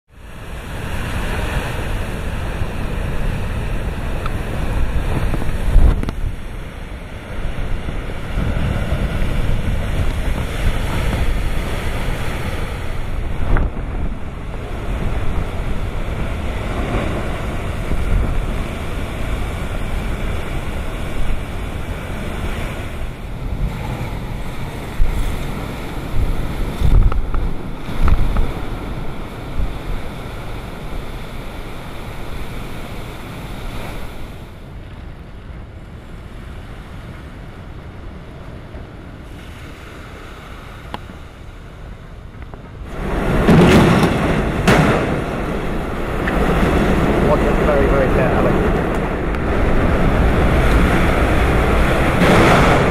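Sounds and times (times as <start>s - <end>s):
strong wind rushing: 0.1s - 34.7s, 35.4s - 52.9s
heavy surf on shore: 0.1s - 52.9s
wind buffeting microphone: 0.1s - 52.9s.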